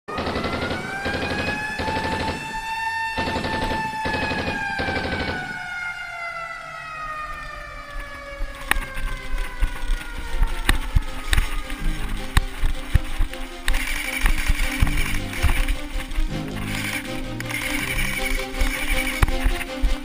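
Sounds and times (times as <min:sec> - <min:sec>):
rapid gunfire: 0:00.1 - 0:02.6, 0:03.2 - 0:05.6, 0:12.1 - 0:20.0
siren winding down: 0:00.1 - 0:12.4
sharp clicks: 0:00.2 - 0:02.4, 0:03.2 - 0:05.5, 0:07.4 - 0:20.0.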